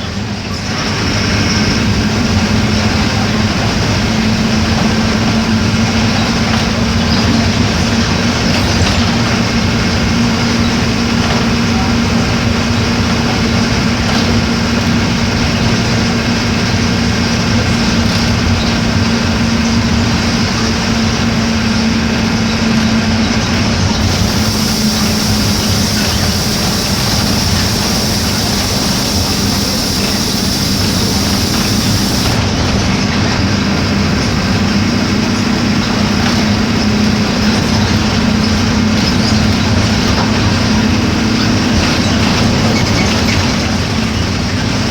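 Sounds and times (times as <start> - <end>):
bus diesel engine running: 0.0 - 44.9
engine whine: 0.0 - 44.9
high hiss: 24.0 - 32.4.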